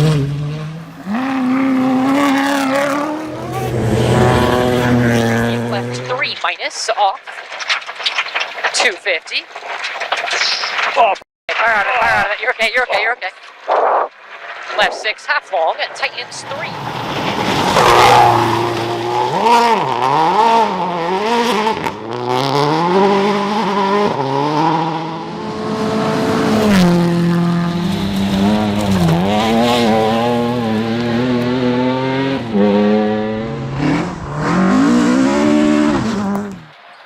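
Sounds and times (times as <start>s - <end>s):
rally car engine revving: 0.0s - 6.3s, 16.3s - 36.8s.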